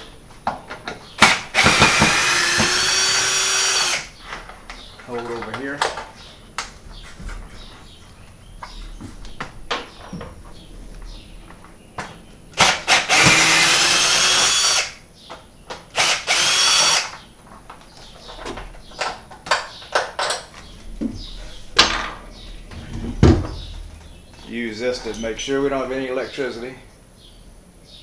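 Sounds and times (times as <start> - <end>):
power drill whining: 1.2 - 4.2, 12.6 - 15.0, 15.9 - 17.2.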